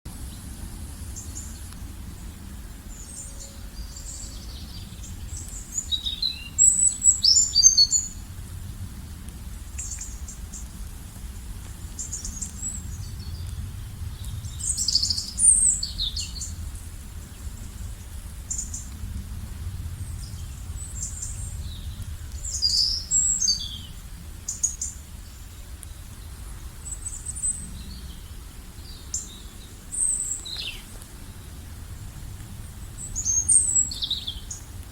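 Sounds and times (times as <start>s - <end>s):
low steady rumble: 0.1s - 34.9s
birds chirping and singing: 2.9s - 8.2s, 20.1s - 26.0s, 26.9s - 31.5s, 32.6s - 34.6s.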